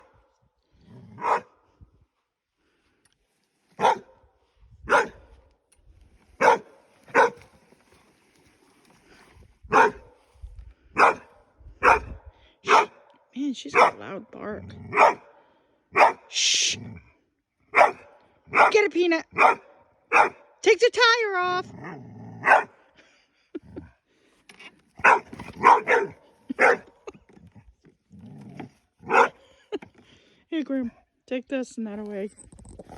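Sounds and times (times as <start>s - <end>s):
dog barking: 1.2s - 1.6s, 3.8s - 4.2s, 4.9s - 5.3s, 6.4s - 7.4s, 9.7s - 10.1s, 11.0s - 13.0s, 13.7s - 14.1s, 14.9s - 16.3s, 17.7s - 20.5s, 22.4s - 22.8s, 25.0s - 26.9s, 29.0s - 29.4s.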